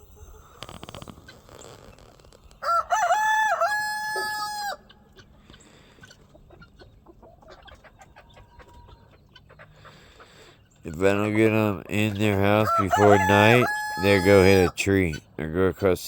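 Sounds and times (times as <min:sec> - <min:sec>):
chickens clucking: 0:00.0 - 0:15.9
rooster crowing: 0:02.6 - 0:04.9, 0:12.6 - 0:14.7.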